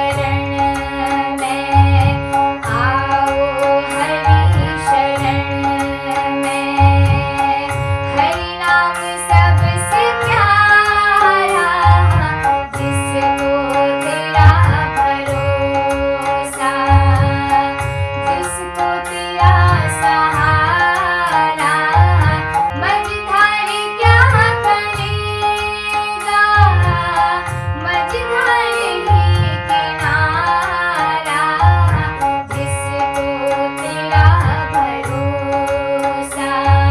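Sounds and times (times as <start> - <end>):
steady low drum beat: 0.0 - 1.1, 1.8 - 6.0
tabla: 0.0 - 36.9
woman singing: 0.0 - 36.9.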